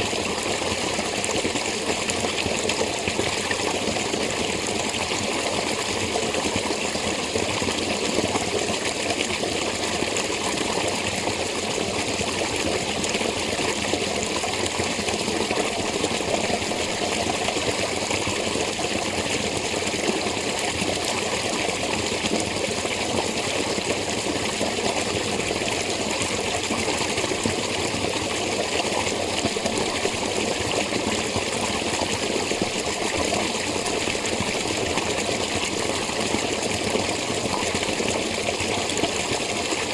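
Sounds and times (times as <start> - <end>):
spring water splashing and trickling: 0.0 - 39.9.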